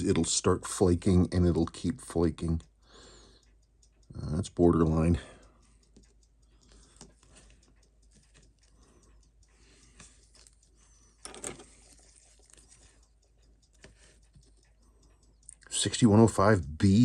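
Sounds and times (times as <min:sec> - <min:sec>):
small tools clicking and tapping: 0:04.0 - 0:16.1.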